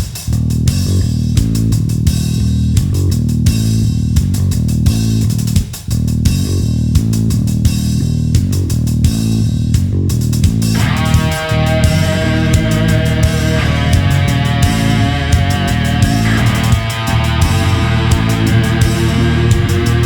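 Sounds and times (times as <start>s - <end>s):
bass guitar: 0.0s - 20.0s
steady drum beat: 0.0s - 20.0s
electric guitar: 10.8s - 20.0s.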